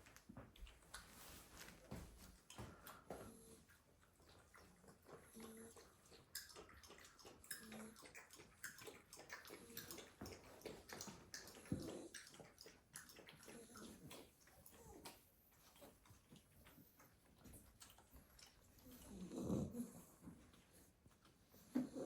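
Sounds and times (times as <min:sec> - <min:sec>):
puppies snoring: 0:18.6 - 0:22.0.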